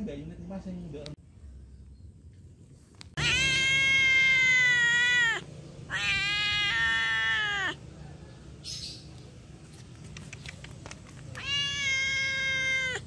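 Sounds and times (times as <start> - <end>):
cat meowing: 3.2 - 7.8, 11.3 - 13.0
faint clicks: 9.2 - 11.4.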